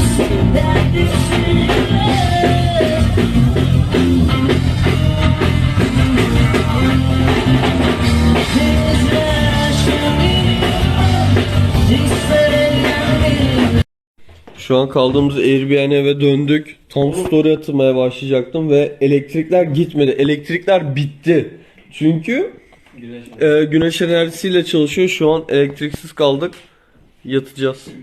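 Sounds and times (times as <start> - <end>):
rock music with singing: 0.0 - 13.8.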